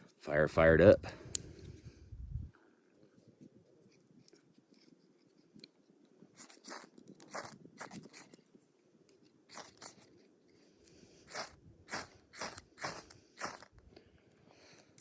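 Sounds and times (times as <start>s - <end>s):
striker scraping ferrocerium rod: 6.4s - 8.4s, 9.5s - 10.1s, 11.3s - 13.7s.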